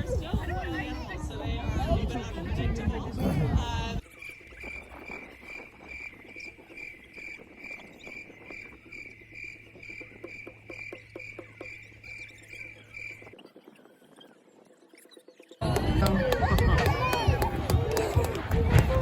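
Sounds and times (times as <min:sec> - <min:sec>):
insect chirping: 0:04.0 - 0:15.6.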